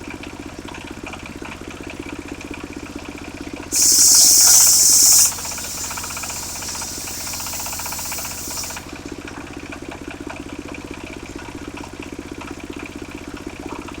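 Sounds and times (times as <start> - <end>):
engine running with regular pulse: 3.7 - 9.2.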